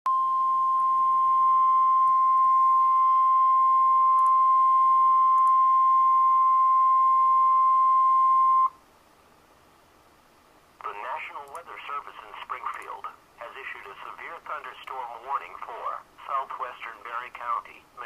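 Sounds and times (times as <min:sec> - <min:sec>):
high warning tone beep: 0:00.1 - 0:08.8.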